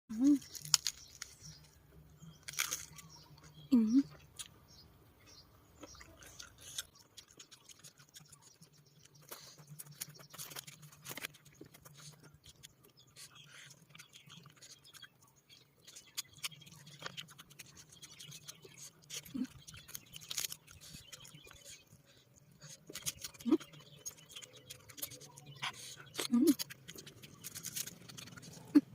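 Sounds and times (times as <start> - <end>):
person chewing food: 0.2 - 4.6, 5.8 - 28.9.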